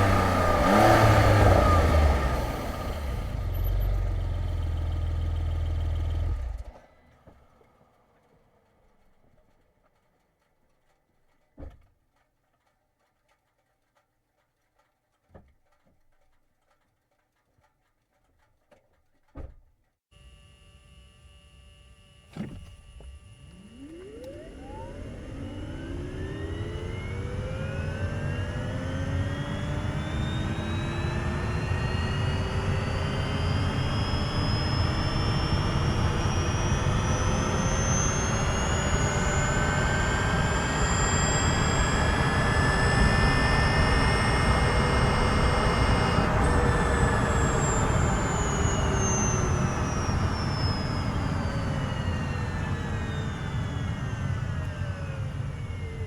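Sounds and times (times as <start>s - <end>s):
vehicle engine whining: 0.0s - 6.9s, 20.2s - 56.0s.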